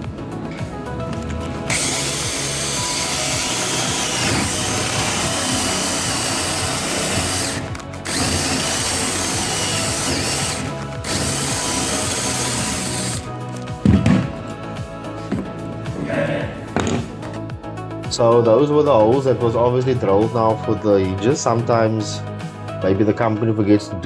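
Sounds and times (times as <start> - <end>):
power drill whining: 0.4 - 13.9.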